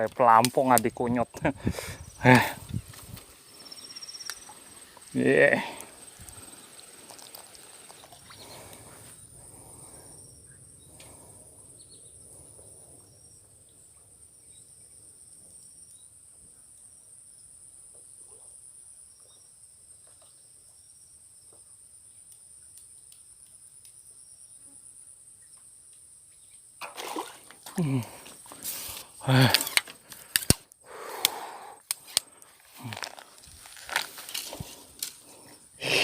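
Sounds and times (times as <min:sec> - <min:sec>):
high-pitched insect chorus: 0:00.2 - 0:16.2.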